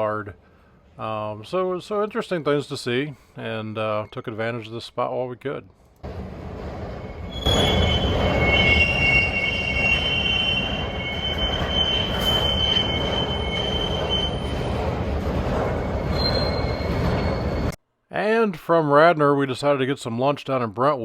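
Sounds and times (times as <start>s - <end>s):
train rumble: 6.0s - 17.8s
train wheels squealing on rails: 6.6s - 17.8s.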